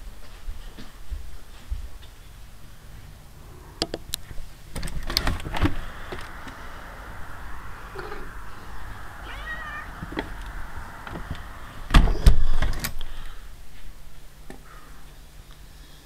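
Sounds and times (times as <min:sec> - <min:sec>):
steady hiss: 0:02.2 - 0:16.0
cat meow: 0:09.0 - 0:11.6.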